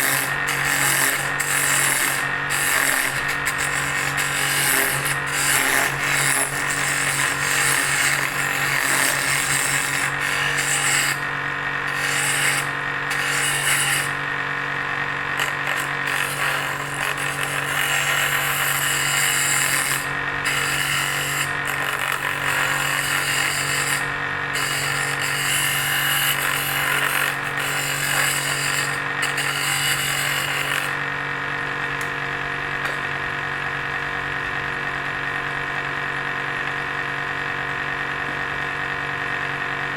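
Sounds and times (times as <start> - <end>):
cutting tool scraping wood: 0.0 - 14.4, 15.2 - 31.1
drill press motor running: 0.0 - 39.9.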